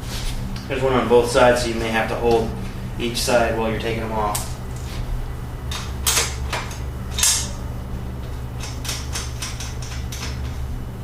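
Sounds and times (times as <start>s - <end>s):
low hum: 0.0s - 11.0s
wrench clicking: 8.6s - 10.4s.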